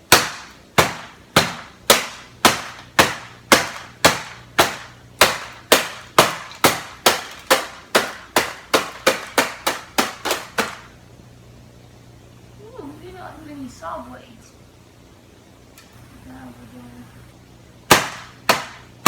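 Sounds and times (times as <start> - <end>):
blows striking printer housing: 0.0 - 11.0, 17.9 - 19.0.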